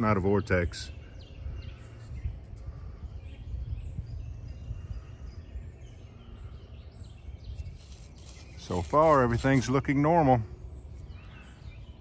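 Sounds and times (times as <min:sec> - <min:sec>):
faint bird chirps: 0:00.0 - 0:12.0.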